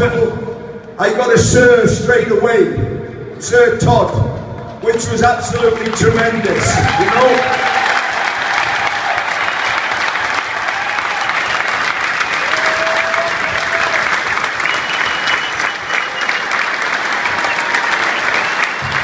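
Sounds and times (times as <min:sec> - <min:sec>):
stadium crowd clapping: 0:04.6 - 0:19.0.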